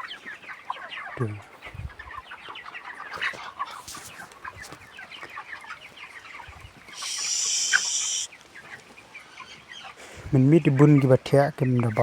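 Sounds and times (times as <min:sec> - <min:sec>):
chickens cheeping and clucking: 0:00.0 - 0:12.0
high-pitched buzzing hiss: 0:07.0 - 0:08.3.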